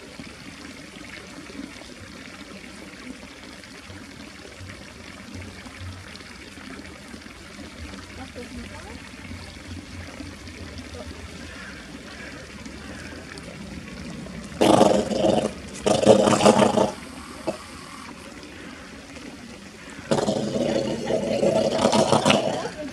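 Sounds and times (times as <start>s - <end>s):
faint trickling water: 0.0s - 22.9s
seal buzzy vocalizations: 11.4s - 19.0s, 19.8s - 22.9s.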